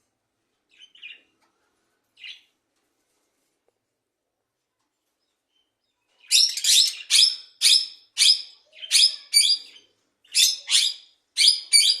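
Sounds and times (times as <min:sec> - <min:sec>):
bird chirping: 0:00.7 - 0:01.3, 0:02.2 - 0:02.5, 0:05.2 - 0:12.0.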